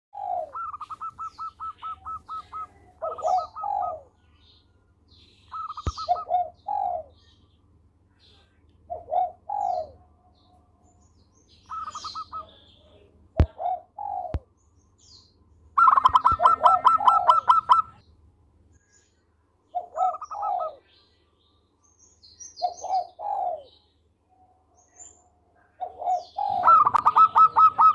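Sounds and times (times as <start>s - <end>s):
dove cooing: 0.1s - 4.2s, 5.5s - 7.3s, 8.9s - 10.1s, 11.7s - 14.5s, 15.8s - 18.0s, 19.7s - 20.8s, 22.6s - 23.8s, 25.7s - 27.9s
small birds chirping: 0.1s - 27.9s.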